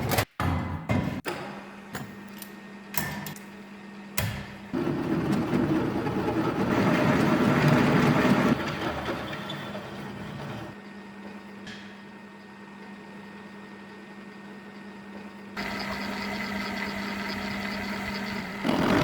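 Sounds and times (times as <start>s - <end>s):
electric drill running: 15.6s - 19.0s.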